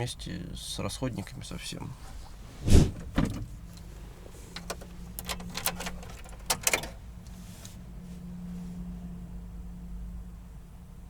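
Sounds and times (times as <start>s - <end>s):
sharp clicks and light knocks: 4.5s - 7.4s.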